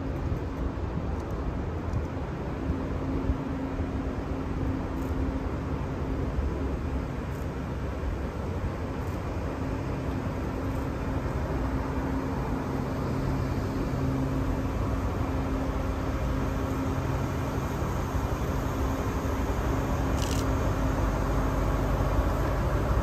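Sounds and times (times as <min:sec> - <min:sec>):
diesel locomotive engine running: 0:00.0 - 0:23.0.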